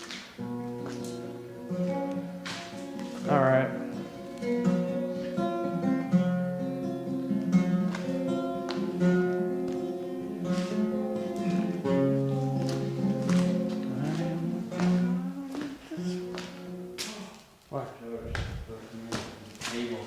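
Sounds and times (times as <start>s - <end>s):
flamenco acoustic guitar: 0.0s - 17.4s.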